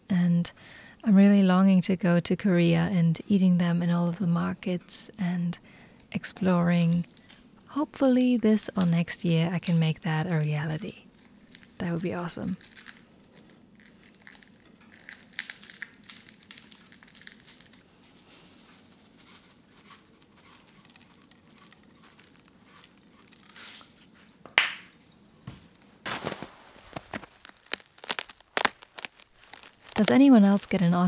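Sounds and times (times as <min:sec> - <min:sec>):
crinkling and rustling handling: 0:05.9 - 0:07.5, 0:08.7 - 0:31.0
sharp crack: 0:24.6 - 0:25.0, 0:26.0 - 0:30.2.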